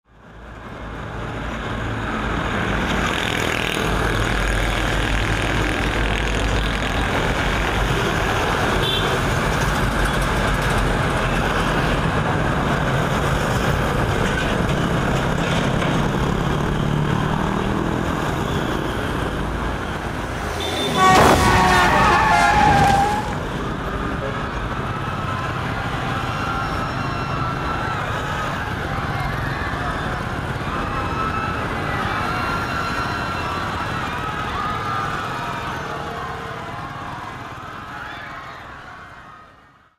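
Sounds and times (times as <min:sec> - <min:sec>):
road traffic: 0:00.0 - 0:39.9
horn blare or screech: 0:20.4 - 0:23.5.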